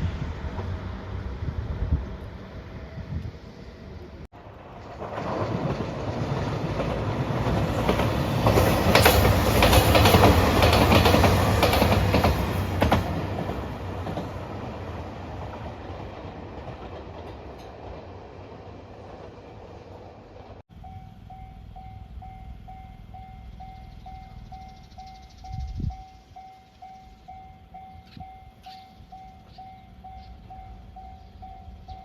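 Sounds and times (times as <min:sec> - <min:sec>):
train passing: 0:00.0 - 0:32.0
wheels clacking over rail joints: 0:04.5 - 0:19.6.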